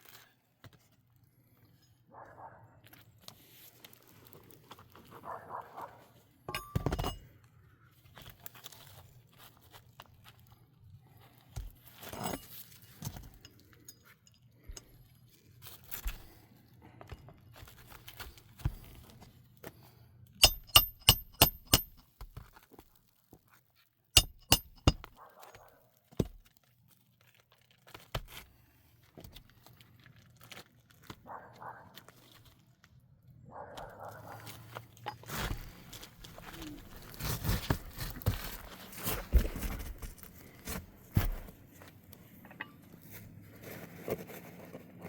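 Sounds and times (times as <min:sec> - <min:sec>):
sharp ringing clinks: 0:20.4 - 0:22.0, 0:24.2 - 0:25.1
knocks and rattles: 0:24.2 - 0:25.2.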